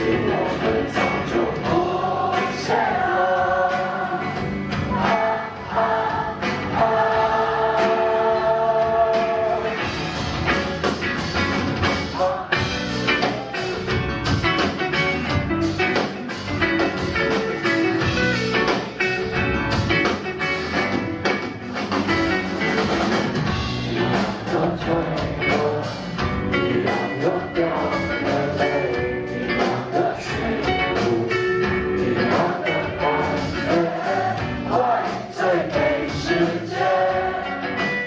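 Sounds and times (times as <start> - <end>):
drums: 0.0 - 38.0
electric guitars: 0.0 - 38.0
person singing: 23.9 - 37.5.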